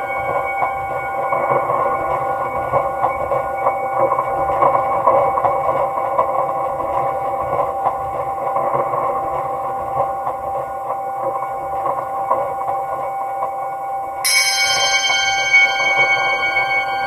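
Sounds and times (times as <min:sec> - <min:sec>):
ambient drone music: 0:00.0 - 0:17.0.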